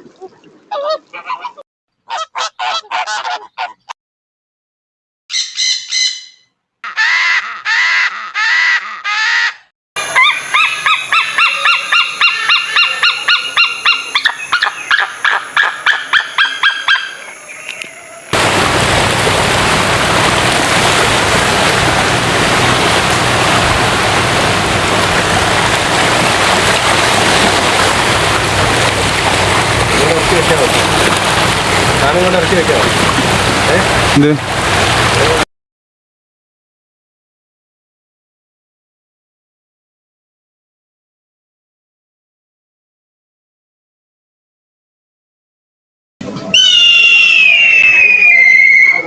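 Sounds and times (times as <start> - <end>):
birds calling: 10.0 - 35.1
steady rushing noise: 18.4 - 35.4.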